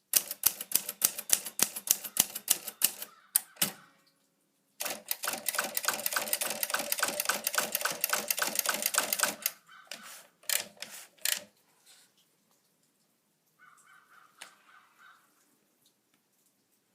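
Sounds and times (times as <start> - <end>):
typewriter keys clacking: 0.1 - 3.7, 4.8 - 11.5.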